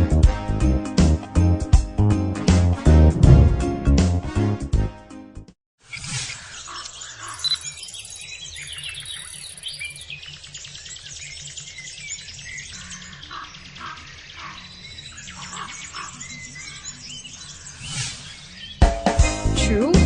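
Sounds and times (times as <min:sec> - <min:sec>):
background music with steady beat: 0:00.0 - 0:05.5, 0:18.8 - 0:20.0
bird-like chirps and tweets: 0:05.9 - 0:18.9.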